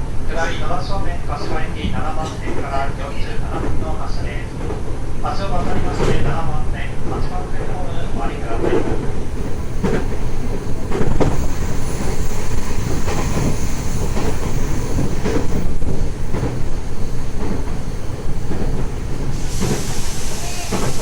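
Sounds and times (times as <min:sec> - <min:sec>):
train wheels rumbling: 0:00.0 - 0:21.0.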